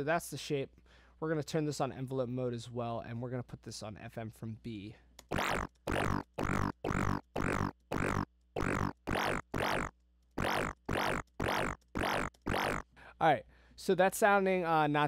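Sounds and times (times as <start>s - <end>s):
synth bass notes sweeping down: 5.3s - 12.8s.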